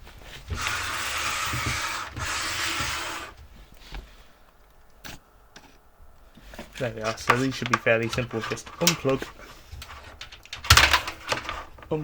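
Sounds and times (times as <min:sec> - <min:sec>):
packaging rubbing and scraping: 0:00.0 - 0:03.9, 0:06.8 - 0:10.2.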